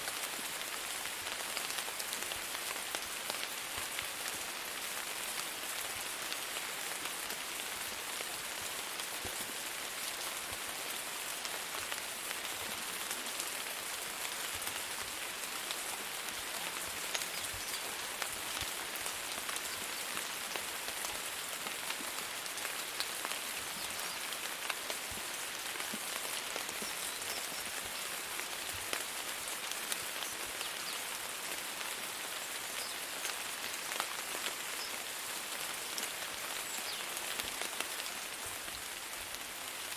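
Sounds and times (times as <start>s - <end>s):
rain on a hard surface: 0.0s - 39.9s
raindrop ticks: 15.6s - 31.0s.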